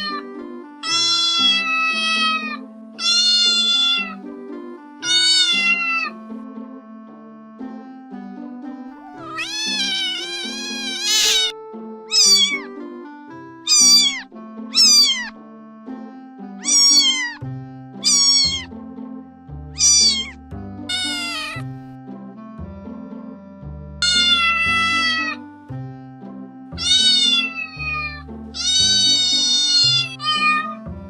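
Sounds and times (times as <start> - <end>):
cat meowing: 0.0 - 0.2, 0.8 - 4.2, 5.0 - 6.2, 9.0 - 11.5, 12.1 - 12.8, 13.7 - 15.3, 16.6 - 17.4, 18.0 - 18.7, 19.8 - 21.7, 24.0 - 25.5, 26.8 - 30.9
background music: 0.0 - 31.0.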